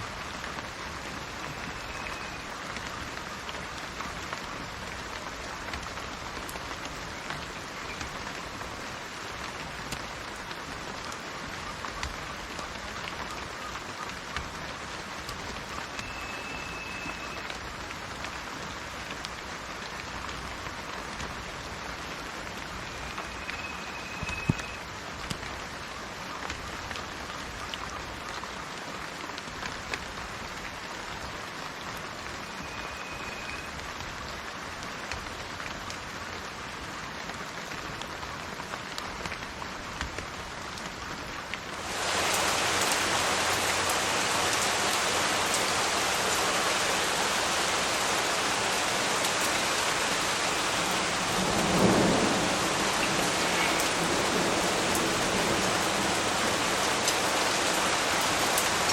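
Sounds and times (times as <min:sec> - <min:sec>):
rain falling: 0:00.0 - 0:58.9
thunder rumble: 0:41.8 - 0:58.9.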